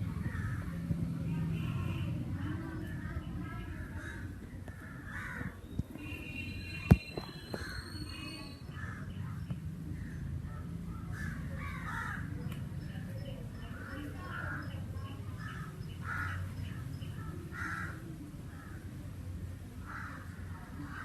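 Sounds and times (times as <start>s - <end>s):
crows cawing: 3.9s - 5.6s, 11.1s - 12.3s, 15.4s - 16.5s, 17.2s - 18.8s, 19.8s - 21.0s.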